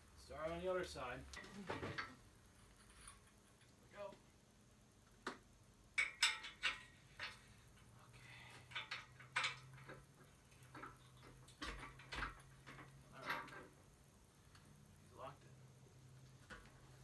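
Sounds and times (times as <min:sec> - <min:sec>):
light metal clanks and knocks: 0:01.3 - 0:03.8, 0:06.0 - 0:07.9, 0:08.5 - 0:13.8.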